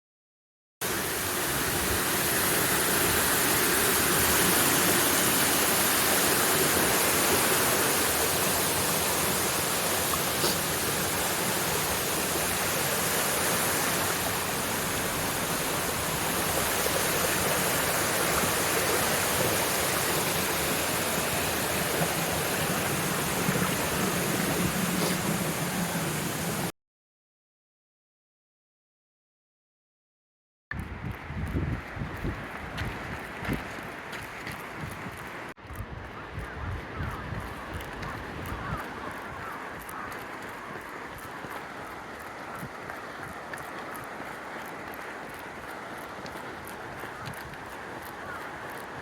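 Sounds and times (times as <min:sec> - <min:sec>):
flowing water rushing: 0:00.8 - 0:26.7, 0:37.6 - 0:49.0.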